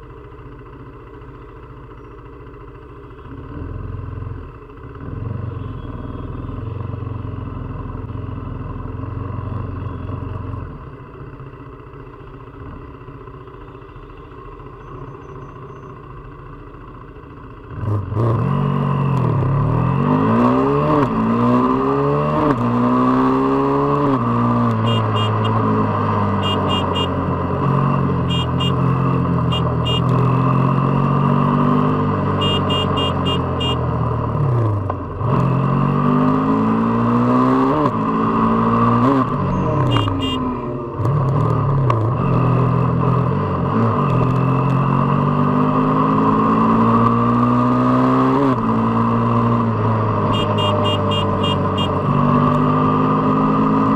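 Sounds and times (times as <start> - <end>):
motorcycle engine accelerating: 14.6 - 53.9.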